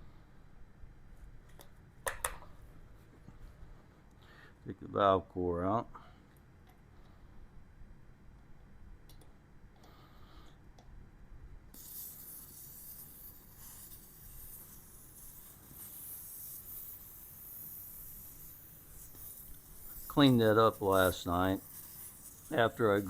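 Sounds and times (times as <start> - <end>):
air hissing from tire valve: 11.7 - 23.0.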